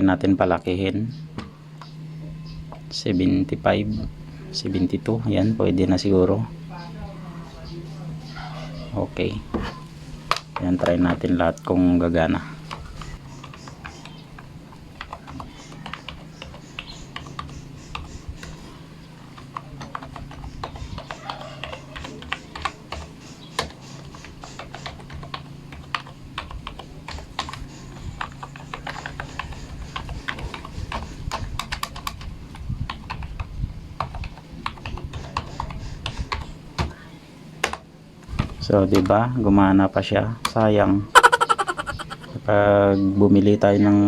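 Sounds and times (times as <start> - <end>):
low steady hum: 0.0 - 23.4.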